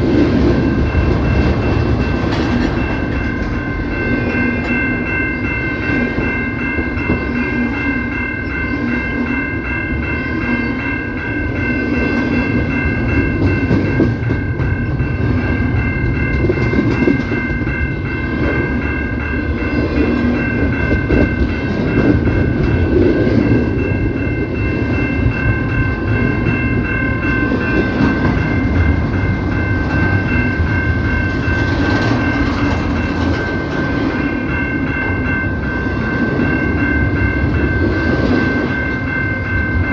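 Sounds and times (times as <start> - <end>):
train wheels rumbling on rails: 0.0 - 39.9.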